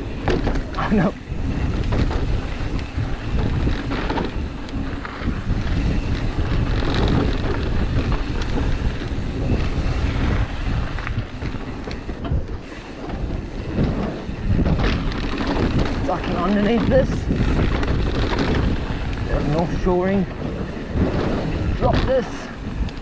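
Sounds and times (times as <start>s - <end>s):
bike knocks and rattles: 0.0s - 23.0s
wind rushing over microphone: 0.0s - 23.0s.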